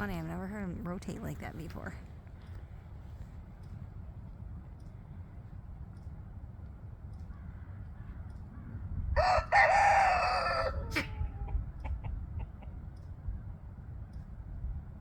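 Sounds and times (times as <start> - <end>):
rooster crowing: 9.2 - 11.6.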